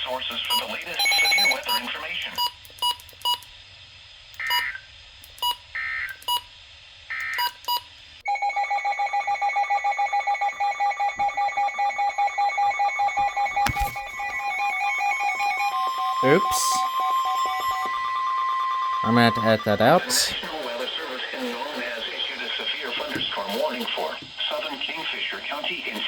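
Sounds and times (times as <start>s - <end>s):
rapidly beeping electronic alarm: 0.5s - 3.4s, 4.4s - 4.8s, 5.4s - 6.5s, 7.1s - 20.4s.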